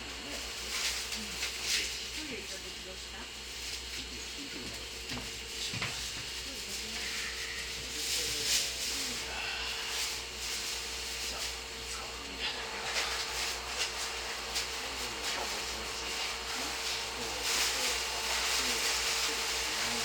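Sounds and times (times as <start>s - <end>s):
electrical hum: 0.0s - 20.0s
faint voices: 0.0s - 20.0s
hiss of air: 6.4s - 20.0s.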